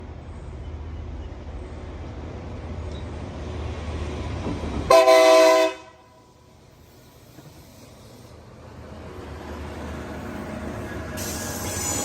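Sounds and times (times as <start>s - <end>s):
multi-chime locomotive horn: 4.9s - 6.0s.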